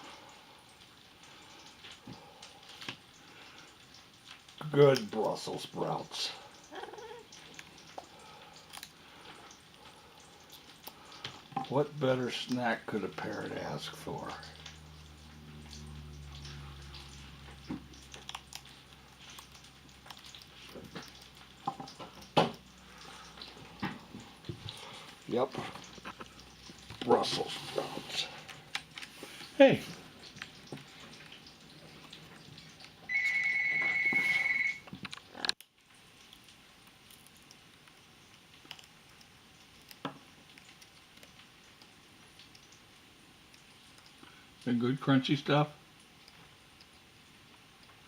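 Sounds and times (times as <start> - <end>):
parrot crunching a sprout: 6.7 - 11.7, 14.4 - 23.8
high-pitched beeping tone: 33.1 - 34.8.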